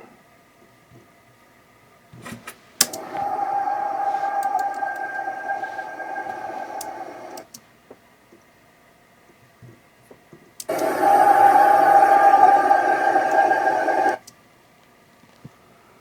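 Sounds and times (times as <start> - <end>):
faint clicks: 2.8 - 7.6, 10.6 - 14.4
droning hum: 2.9 - 7.5, 10.7 - 14.2
hiss: 2.9 - 7.5, 10.7 - 14.2.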